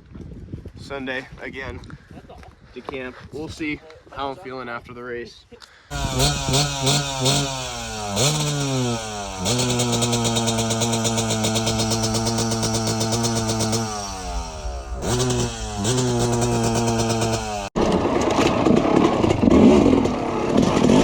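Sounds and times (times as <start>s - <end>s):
motorcycle engine revving: 5.9s - 18.1s.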